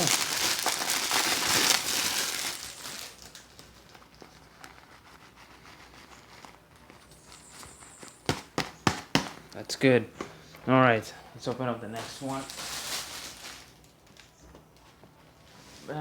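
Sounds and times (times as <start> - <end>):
packaging crinkling: 0.0 - 9.3, 11.9 - 14.4
sharp knock: 8.3 - 9.4.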